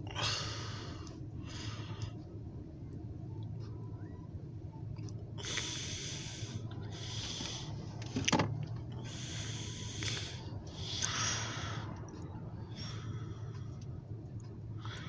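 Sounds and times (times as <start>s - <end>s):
steady low hum: 0.0s - 15.0s
person breathing close to microphone: 9.0s - 12.0s.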